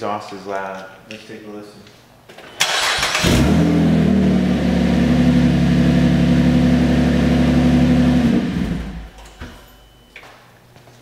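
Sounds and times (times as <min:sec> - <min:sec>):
car engine idling: 0:03.4 - 0:09.2.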